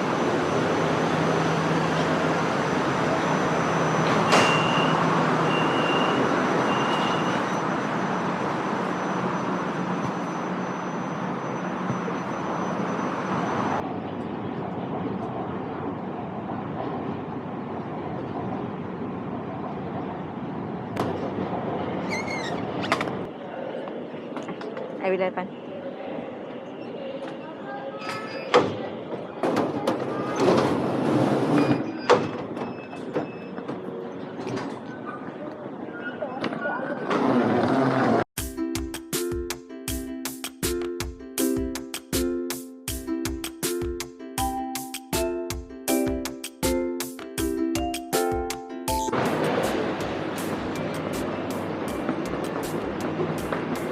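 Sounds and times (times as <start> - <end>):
electric train rumbling: 0.0 - 27.5, 47.5 - 53.9.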